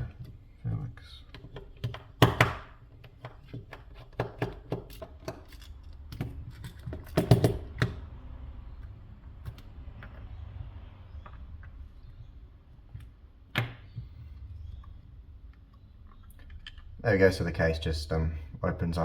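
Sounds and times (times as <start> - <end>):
loud plastic clunks: 1.8 - 3.4.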